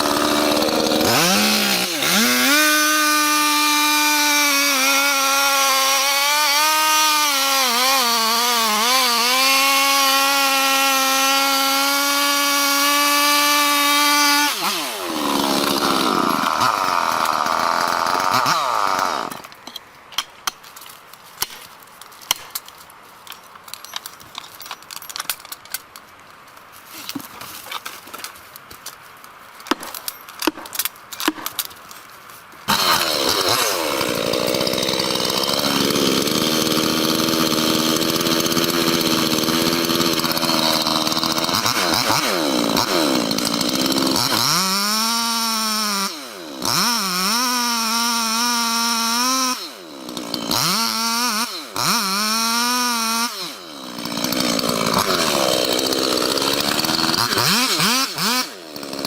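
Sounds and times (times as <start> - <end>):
chainsaw engine revving: 0.0 - 19.5, 32.7 - 59.0.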